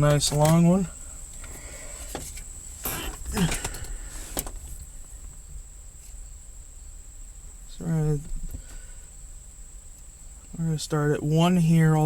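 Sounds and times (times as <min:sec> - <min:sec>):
gear lever clicks and clunks: 0:01.4 - 0:04.7.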